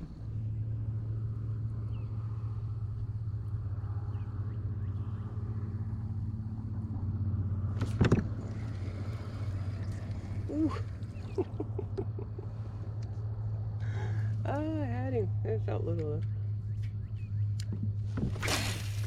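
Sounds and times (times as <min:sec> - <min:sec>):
low motor hum: 0:00.0 - 0:19.0
sharp knock or splash: 0:18.3 - 0:19.0.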